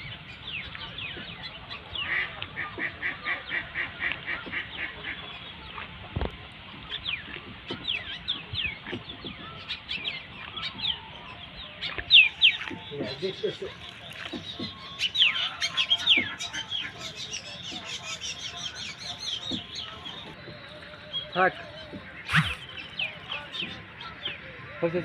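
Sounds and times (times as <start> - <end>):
birds chirping: 0.0 - 25.0.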